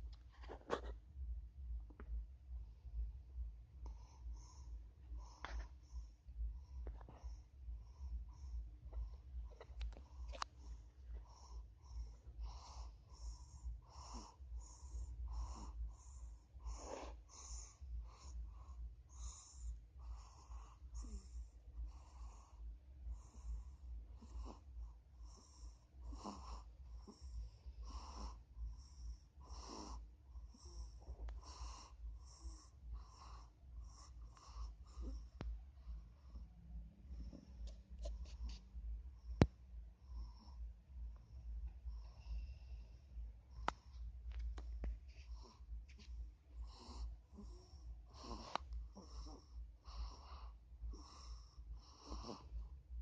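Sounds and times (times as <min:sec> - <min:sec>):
steady low hum: 0:00.0 - 0:53.0
child snoring: 0:25.3 - 0:28.4, 0:46.6 - 0:52.6.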